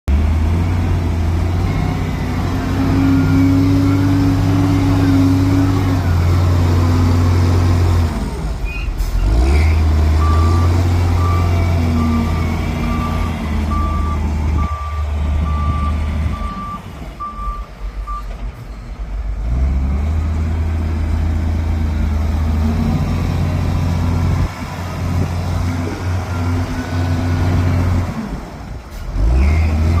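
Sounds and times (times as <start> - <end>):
bulldozer diesel engine working: 0.1 - 30.0
reversing alarm beeping: 10.2 - 19.0.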